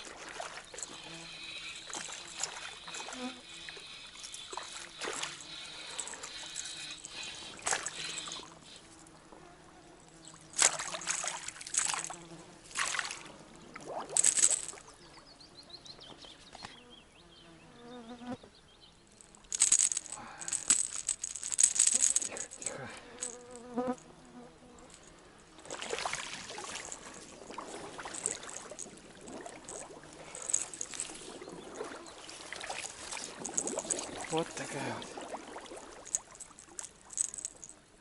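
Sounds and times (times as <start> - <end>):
water splashing: 0.0 - 9.0, 10.3 - 15.0, 25.6 - 37.7.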